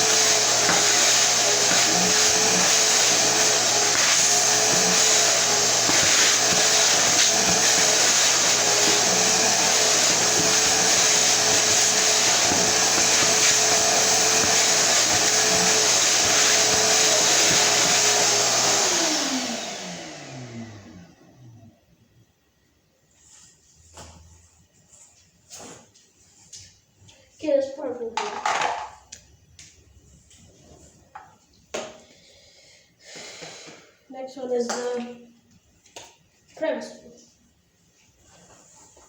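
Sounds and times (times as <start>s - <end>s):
vacuum motor winding down: 0.0s - 21.8s
shop vacuum running: 0.0s - 21.9s.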